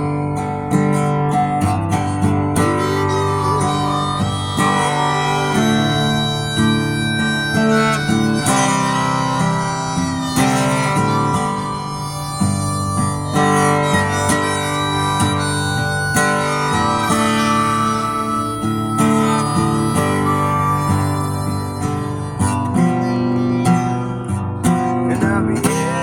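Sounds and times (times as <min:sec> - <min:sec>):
harmonica melody: 0:00.0 - 0:26.0
strummed acoustic guitar: 0:00.0 - 0:26.0.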